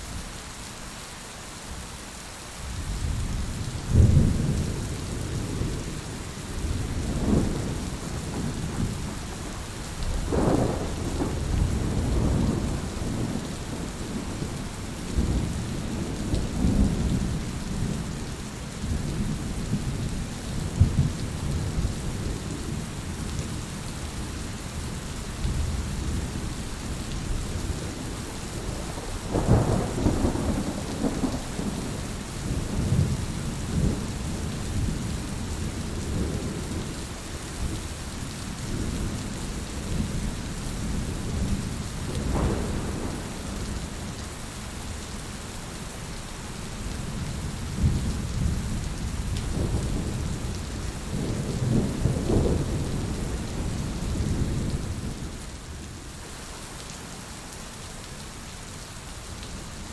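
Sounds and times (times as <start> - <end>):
steady rain: 0.0 - 59.9
thunder rumbling: 3.8 - 18.1, 27.6 - 36.7, 39.8 - 44.3, 47.1 - 55.2.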